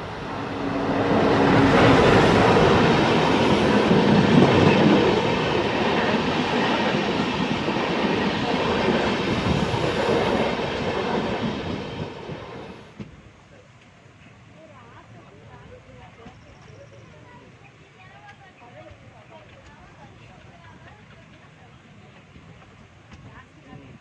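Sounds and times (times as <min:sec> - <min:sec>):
train wheels rumbling on track: 0:00.0 - 0:12.9.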